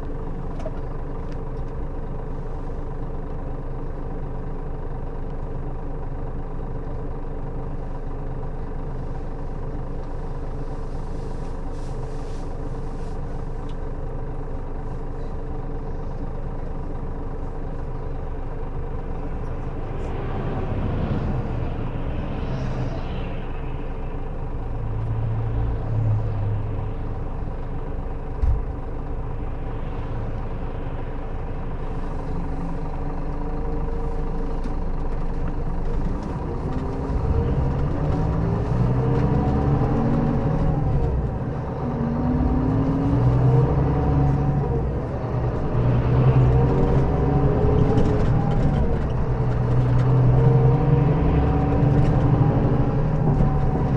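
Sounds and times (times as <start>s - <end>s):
diesel engine idling: 0.0s - 42.7s, 43.3s - 51.7s
swell of engine noise: 15.9s - 53.9s.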